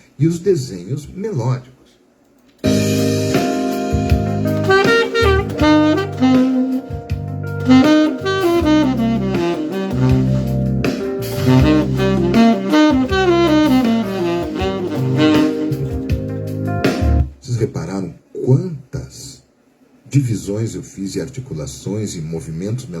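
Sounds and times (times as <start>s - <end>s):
jazz backing track with bass: 2.6s - 17.3s
saxophone improvising: 4.5s - 16.2s.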